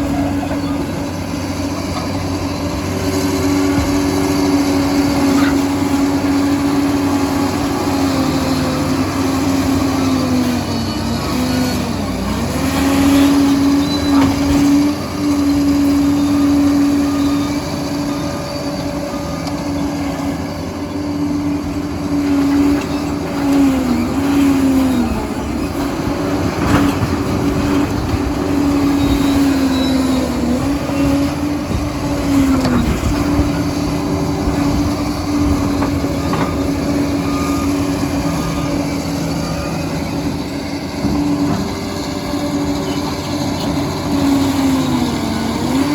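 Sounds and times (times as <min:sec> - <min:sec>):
diesel engine running: 0:00.0 - 0:45.9.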